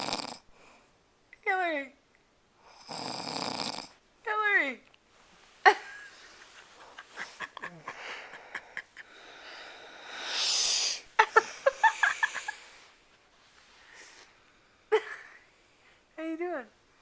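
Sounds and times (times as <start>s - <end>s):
woman snorting and snuffling: 2.9s - 3.9s.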